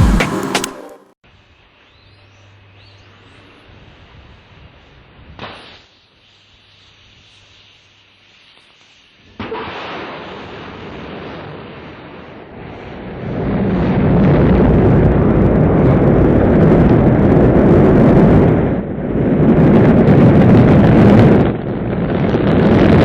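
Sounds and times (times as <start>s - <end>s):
rocket launch roar: 9.3s - 23.0s.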